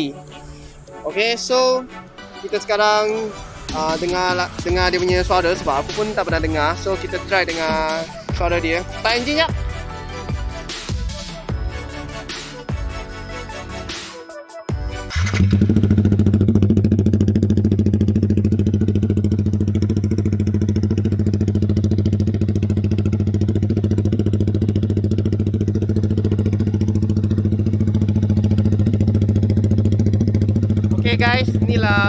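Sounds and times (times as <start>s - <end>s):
motorcycle engine idling: 3.4s - 11.7s, 15.0s - 32.0s.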